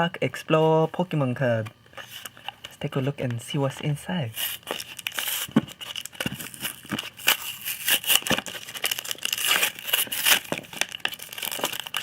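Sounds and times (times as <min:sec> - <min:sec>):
foil wrapper crinkling and tearing: 0:04.3 - 0:12.0.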